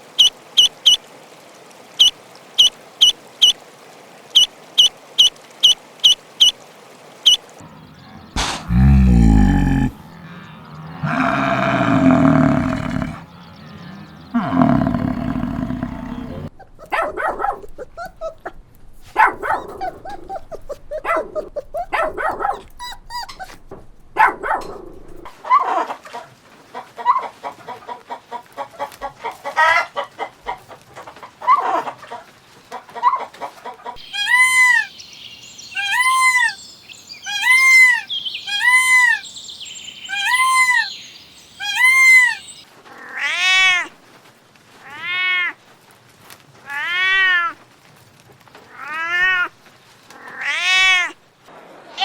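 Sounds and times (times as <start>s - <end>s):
low drawn-out animal calls: 7.6s - 16.6s, 40.0s - 43.2s
short animal calls and clicks: 8.0s - 9.9s
arching high-pitched calls: 34.0s - 42.6s.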